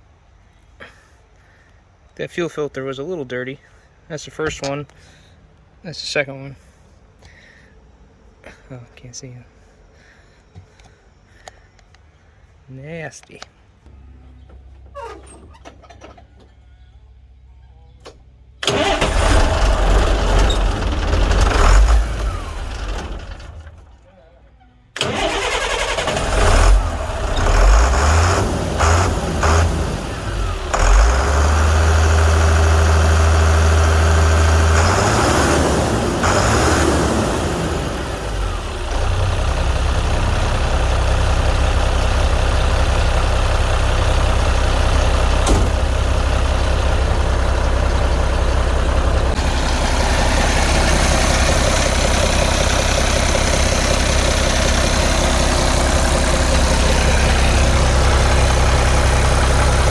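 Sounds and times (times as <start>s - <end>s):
diesel truck engine running: 13.7s - 24.1s, 25.0s - 59.9s.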